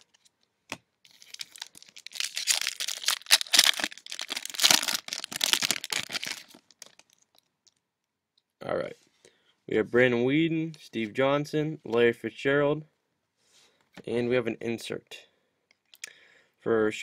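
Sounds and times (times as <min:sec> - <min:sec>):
foil wrapper tearing and crinkling: 0:01.1 - 0:07.4.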